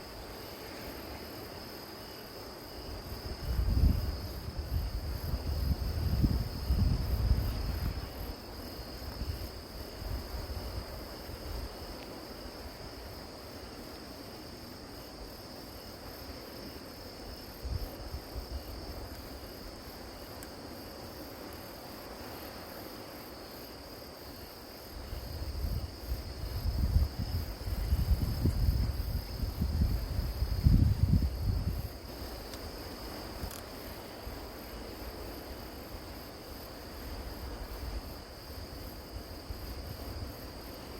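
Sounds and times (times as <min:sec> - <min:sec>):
crickets trilling: 0:00.0 - 0:40.9.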